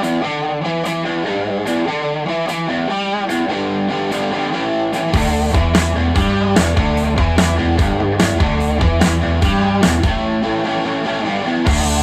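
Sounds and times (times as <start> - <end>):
electric guitar riff: 0.0 - 12.0
bass and drums: 4.2 - 10.8, 11.6 - 12.0.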